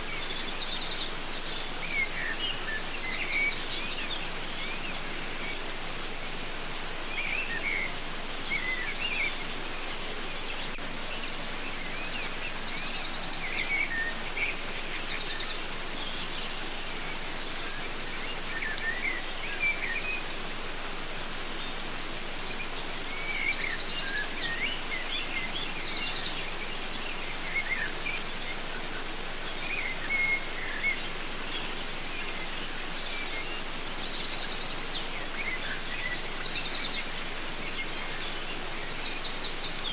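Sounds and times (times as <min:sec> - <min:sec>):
birds chirping and trilling: 0:00.0 - 0:39.9
waterfall rushing: 0:00.0 - 0:39.9.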